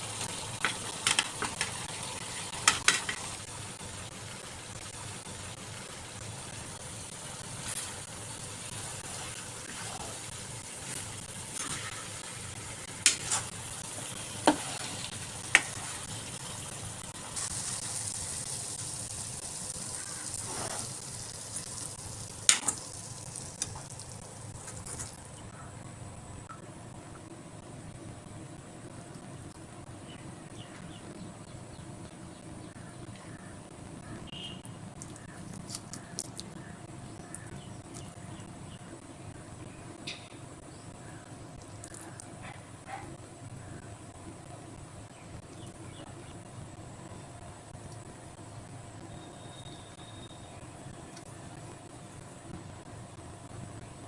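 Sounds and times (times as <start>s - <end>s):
food sizzling in a pan: 0.0s - 25.2s.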